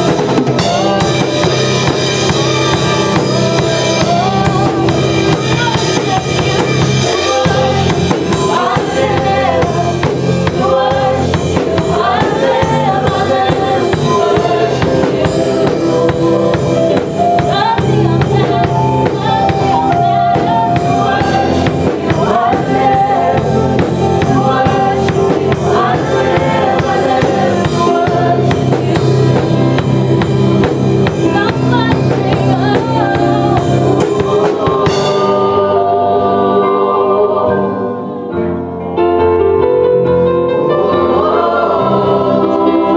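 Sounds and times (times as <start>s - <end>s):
drum kit beat: 0.0s - 35.8s
gospel band playing: 0.0s - 42.9s
singing: 3.0s - 23.5s.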